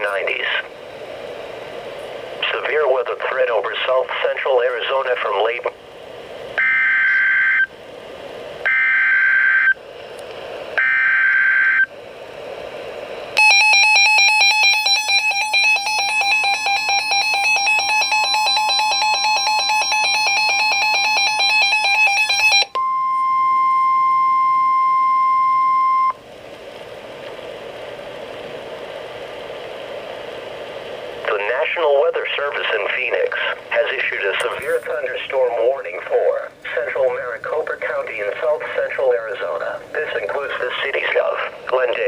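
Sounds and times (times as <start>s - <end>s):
faint radio hiss: 0.0s - 8.7s, 9.4s - 22.7s, 25.4s - 42.0s
steady warning alarm tone: 6.6s - 7.7s, 8.6s - 9.8s, 10.8s - 11.9s, 13.4s - 26.2s
rapid electronic alarm beeping: 13.4s - 23.0s.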